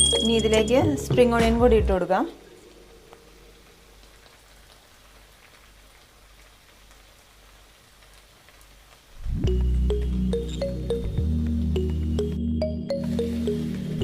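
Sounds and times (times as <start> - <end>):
background music: 0.0 - 3.8, 9.2 - 14.0
faint sizzling in a pan: 0.0 - 11.8, 13.0 - 14.0.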